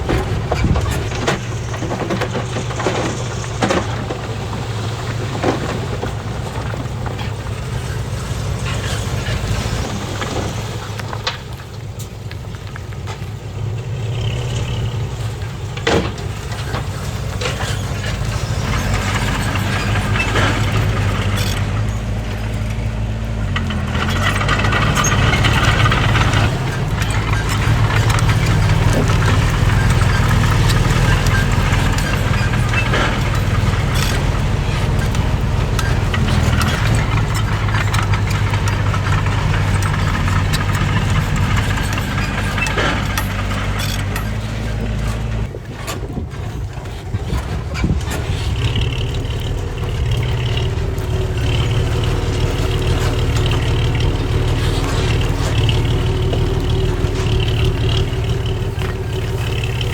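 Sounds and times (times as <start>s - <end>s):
heavy diesel machinery running: 0.0s - 59.9s
knocks and clanks: 0.0s - 59.9s.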